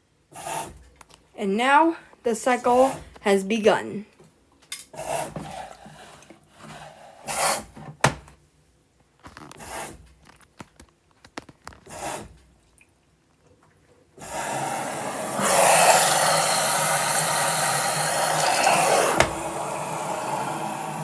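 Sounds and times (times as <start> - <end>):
washing machine drum swishing: 2.6 - 3.2, 14.2 - 21.0
water rushing into machine: 14.2 - 21.0.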